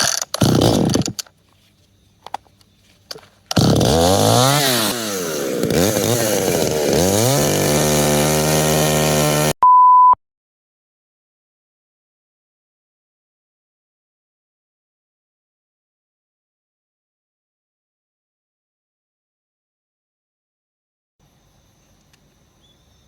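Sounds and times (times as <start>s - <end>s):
chainsaw revving: 0.0s - 1.2s, 3.5s - 9.6s
steady beep: 9.6s - 10.2s.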